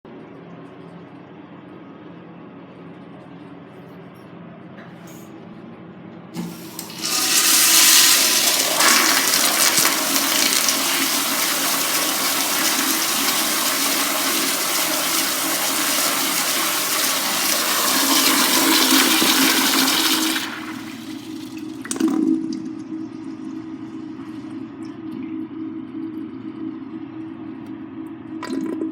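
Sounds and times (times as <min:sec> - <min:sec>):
tank refilling: 0:06.4 - 0:22.8
toilet flushing: 0:06.4 - 0:24.6.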